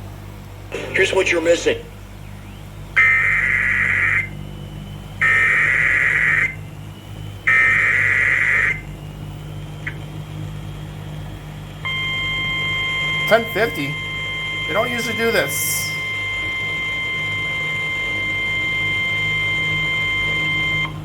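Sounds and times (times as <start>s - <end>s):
low radio hum: 0.0s - 21.0s
steady attention tone: 0.7s - 21.0s
buzzy data bursts: 3.0s - 10.0s, 11.9s - 21.0s.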